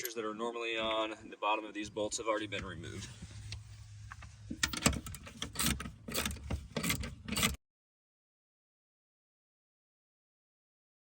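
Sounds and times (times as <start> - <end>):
ratchet wrench clicking: 4.6 - 7.6.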